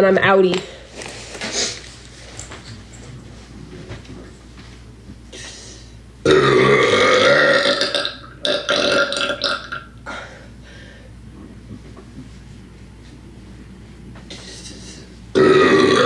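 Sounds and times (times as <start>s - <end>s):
woman burping: 6.3s - 9.9s, 15.4s - 16.0s.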